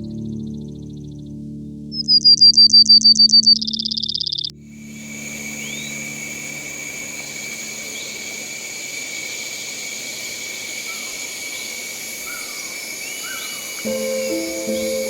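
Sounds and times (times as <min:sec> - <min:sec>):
music: 0:00.0 - 0:03.5, 0:04.5 - 0:07.3, 0:13.8 - 0:15.0
short rising chirps: 0:02.0 - 0:06.7
insect chorus trilling: 0:03.8 - 0:15.0.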